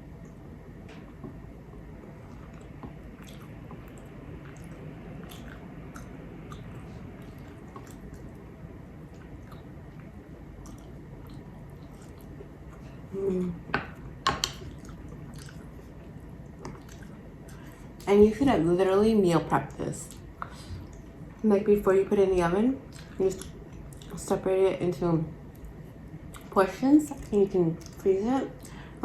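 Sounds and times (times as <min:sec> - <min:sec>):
person chewing food: 0:01.0 - 0:13.1, 0:14.0 - 0:18.0.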